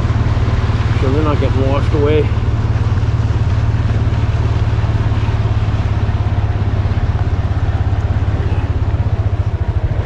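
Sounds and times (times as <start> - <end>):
small vehicle engine running: 0.0 - 10.0.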